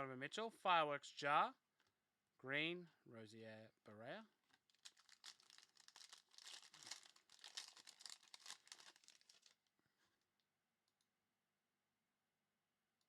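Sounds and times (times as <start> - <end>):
plastic wrapper crinkling and tearing: 4.4 - 9.7.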